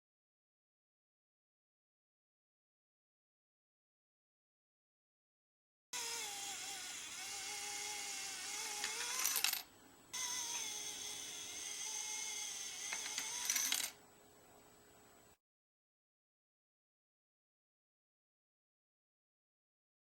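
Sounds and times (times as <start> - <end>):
small motor whirring: 6.0 - 9.6, 10.2 - 14.0
coins clinking: 8.8 - 9.7, 13.1 - 14.0.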